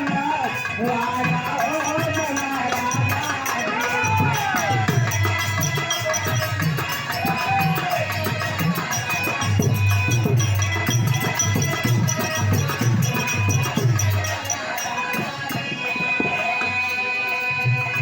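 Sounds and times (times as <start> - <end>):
drum beat: 2.8 - 14.5.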